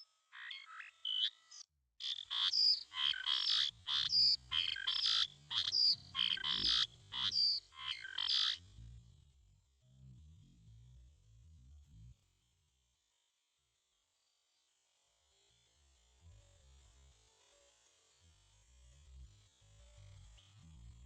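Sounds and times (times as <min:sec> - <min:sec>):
bulbul calling harsh chatter: 0:02.0 - 0:08.6.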